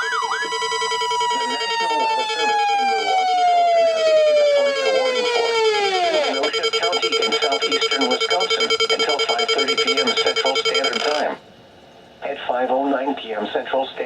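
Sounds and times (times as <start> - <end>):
steady electronic alert tone: 0.0 - 3.2, 4.0 - 11.3
siren-like falling tone: 0.0 - 11.3
rapid beeping: 0.0 - 11.4
weather radio alarms: 0.0 - 11.4.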